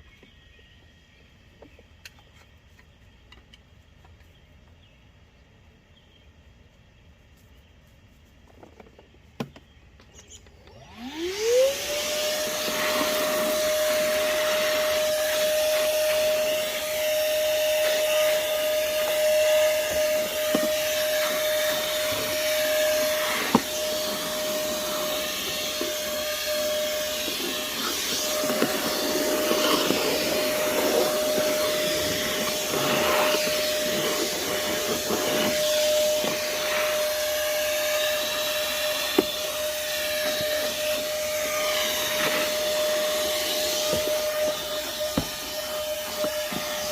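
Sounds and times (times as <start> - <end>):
shop vacuum motor whining: 10.1 - 46.9.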